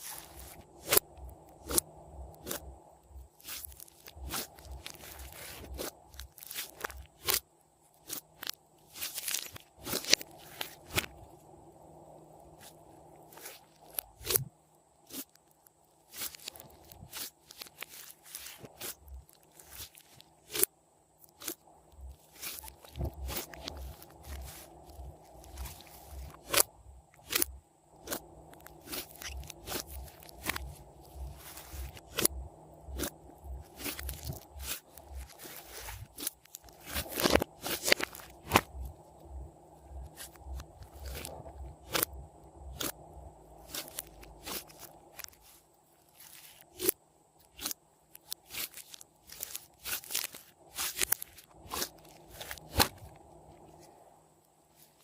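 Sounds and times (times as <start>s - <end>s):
hands squishing sticky slime: 3.3s - 7.4s, 16.1s - 20.7s, 21.3s - 39.0s, 42.7s - 43.0s, 43.6s - 53.2s
slime air pockets popping: 22.4s - 38.9s.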